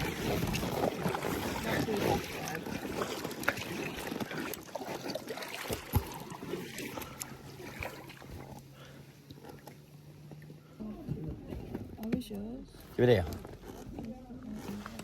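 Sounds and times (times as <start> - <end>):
paddle splashing water: 0.0 - 11.9.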